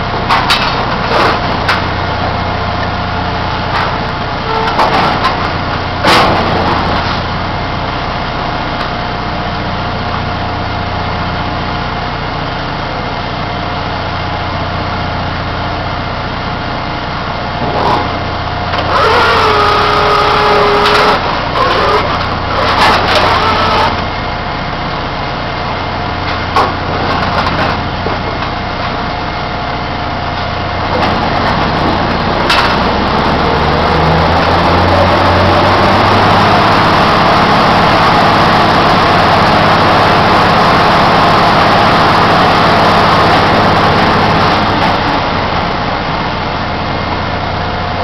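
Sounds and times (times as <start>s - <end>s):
pipe equipment clanking: 30.8s - 33.4s
engines humming: 30.8s - 45.2s.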